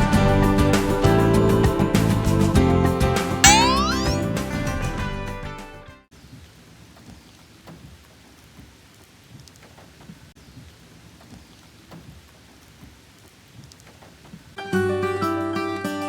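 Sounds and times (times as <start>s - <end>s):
rain falling: 6.1s - 14.6s.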